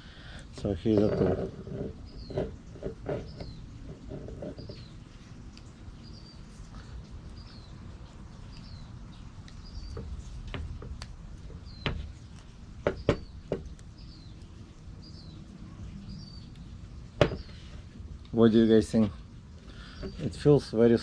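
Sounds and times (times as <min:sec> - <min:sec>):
bird chirping: 0:02.0 - 0:17.8.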